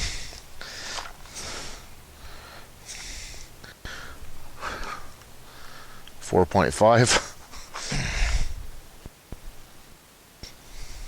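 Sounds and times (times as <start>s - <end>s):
person breathing through nose: 0.0s - 6.1s, 7.6s - 8.6s, 10.4s - 11.0s.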